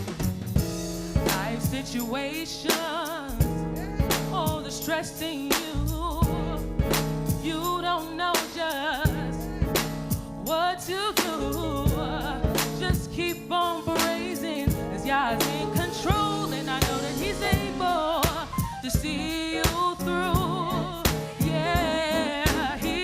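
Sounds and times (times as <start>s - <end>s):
drum hits: 0.0s - 2.0s, 13.9s - 22.9s
gospel singing with vocal runs: 1.2s - 23.0s.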